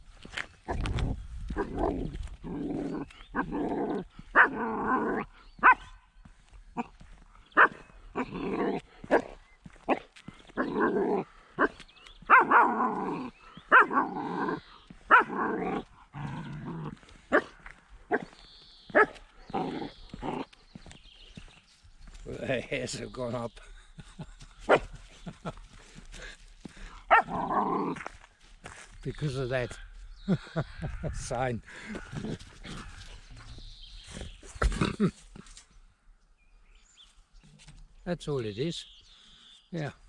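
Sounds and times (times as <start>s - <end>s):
puppy growling: 0.7s - 5.4s, 8.1s - 9.3s, 10.5s - 17.1s, 19.0s - 20.6s, 27.1s - 28.2s
puppy barking: 4.3s - 4.7s, 5.6s - 6.0s, 7.6s - 8.4s, 9.0s - 10.9s, 11.6s - 12.9s, 13.7s - 14.1s, 15.1s - 15.8s, 17.3s - 19.8s, 24.7s - 25.0s, 27.1s - 27.4s.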